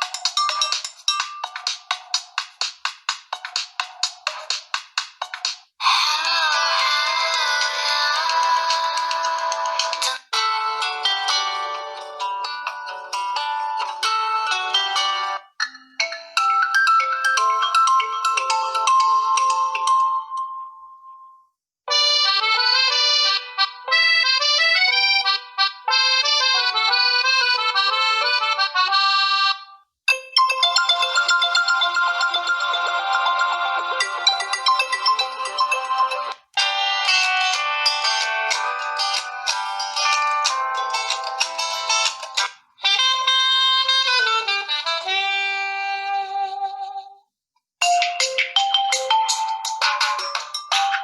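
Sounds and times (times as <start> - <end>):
brighter phone ringtone: 0.0 - 1.9, 10.4 - 21.6, 30.1 - 42.3, 47.8 - 51.0
phone ringtone melody: 0.0 - 2.4, 6.5 - 42.5, 47.8 - 51.0.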